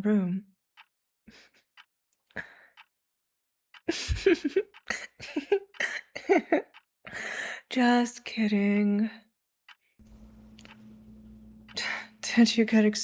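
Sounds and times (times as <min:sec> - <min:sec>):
woman laughing breathily: 0:03.9 - 0:07.5.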